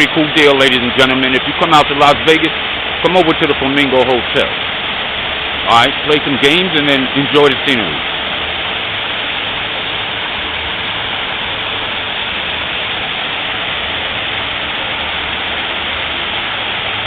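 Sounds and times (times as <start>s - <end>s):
waterfall splashing into pond: 0.0s - 17.0s.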